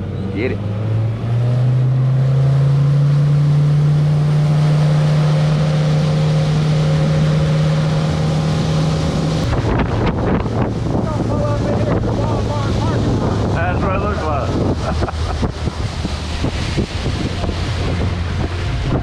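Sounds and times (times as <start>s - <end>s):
motorboat engine droning: 0.0s - 19.0s
water noise: 0.0s - 19.0s
wind: 0.0s - 19.0s.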